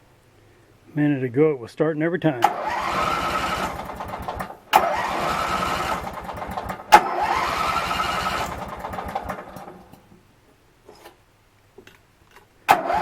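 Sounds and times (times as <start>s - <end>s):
mower engine cranking: 2.4s - 10.0s, 12.7s - 13.0s.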